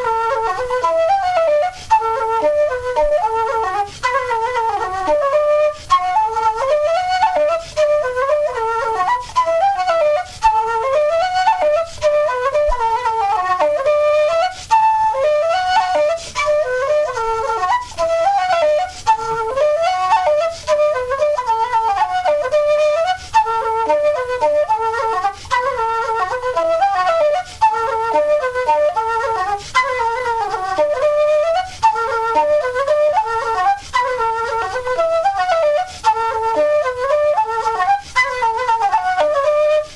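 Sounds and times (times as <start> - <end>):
solo flute playing dance tune: 0.0 - 39.9.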